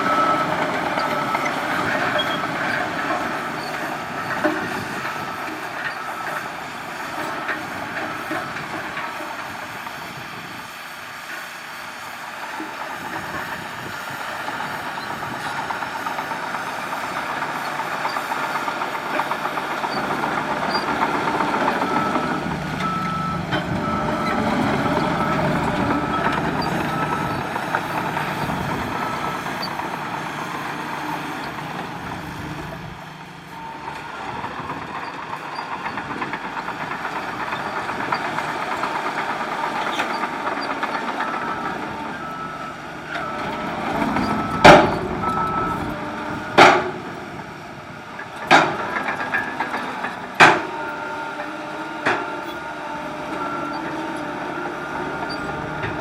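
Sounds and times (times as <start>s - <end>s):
reversing alarm beeping: 0.0s - 2.6s, 19.4s - 31.6s, 41.2s - 46.6s, 52.4s - 56.0s
diesel machinery running: 0.0s - 56.0s.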